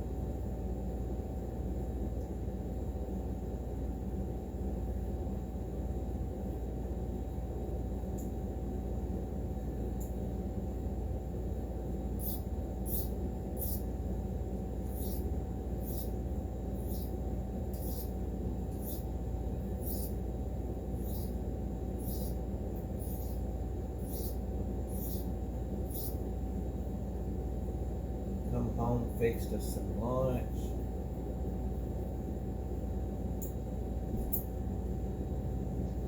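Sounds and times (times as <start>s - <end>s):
steady low hum: 0.0s - 36.0s
knife scraping on sharpening stone: 12.2s - 13.8s, 14.9s - 15.2s, 15.8s - 16.1s, 17.7s - 18.1s, 18.8s - 19.0s, 19.8s - 20.1s, 21.0s - 21.4s, 24.0s - 25.3s, 25.9s - 26.2s.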